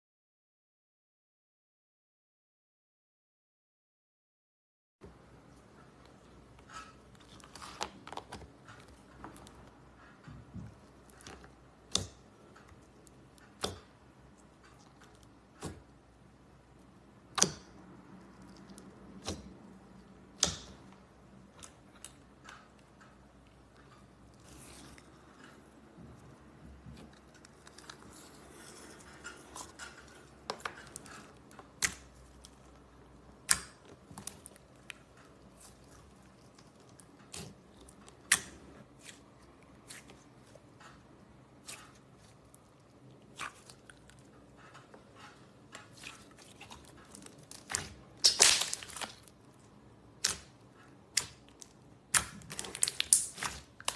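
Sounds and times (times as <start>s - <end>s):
soft slime crackling: 23.7s - 53.9s
slime clicking and popping: 47.2s - 49.3s, 50.2s - 50.5s, 52.1s - 53.9s.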